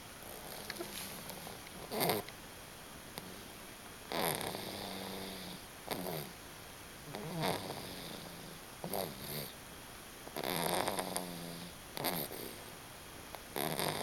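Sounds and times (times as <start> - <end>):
baby snoring: 0.3 - 2.3, 3.2 - 6.4, 7.1 - 9.6, 10.4 - 12.6, 13.5 - 14.0.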